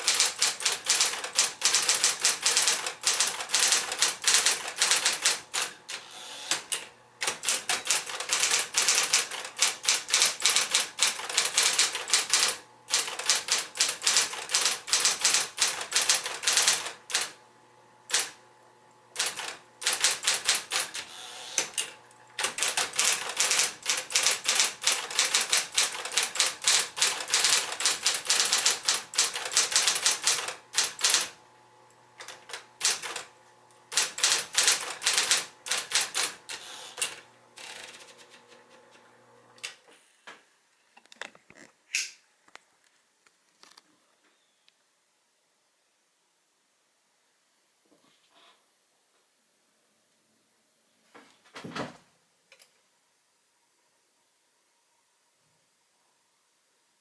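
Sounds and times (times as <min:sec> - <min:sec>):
typewriter key strikes: 0:00.0 - 0:05.7, 0:06.5 - 0:17.3
typewriter motor humming: 0:00.0 - 0:17.4, 0:18.1 - 0:18.4, 0:19.1 - 0:31.4, 0:32.2 - 0:33.3, 0:33.9 - 0:39.0.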